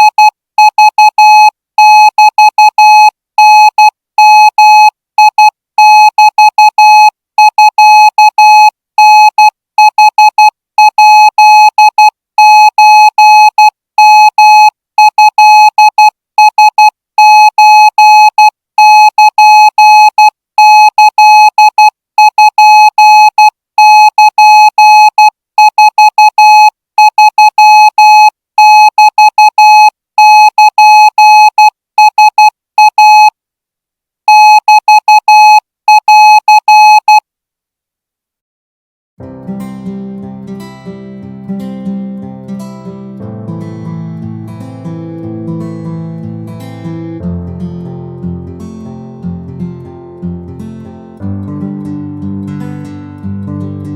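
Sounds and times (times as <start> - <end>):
morse code beeping tone: 0.0 - 33.3, 34.3 - 37.2.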